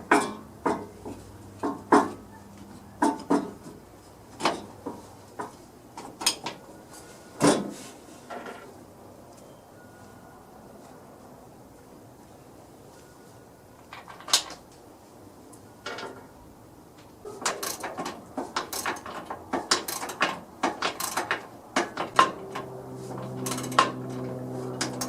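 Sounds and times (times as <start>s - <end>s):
steady hum: 22.1s - 25.0s.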